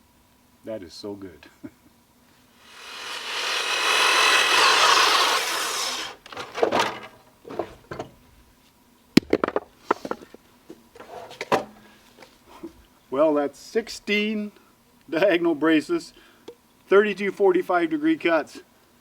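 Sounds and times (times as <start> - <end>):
miter saw cutting wood: 2.6 - 7.1
knocks and clunks: 6.2 - 8.3, 9.2 - 10.3.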